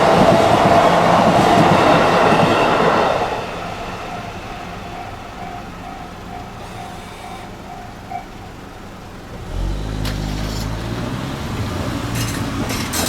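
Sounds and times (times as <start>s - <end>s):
wheels clattering over rails: 0.0s - 13.0s
vehicle engine pulling away: 2.1s - 13.0s
level crossing bell ringing: 3.3s - 9.4s.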